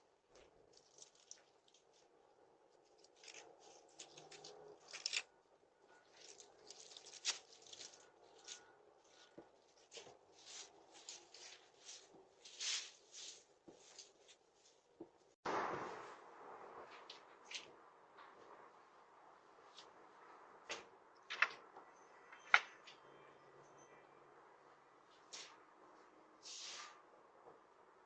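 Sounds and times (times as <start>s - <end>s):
faint rustling and scraping: 0.3s - 16.2s.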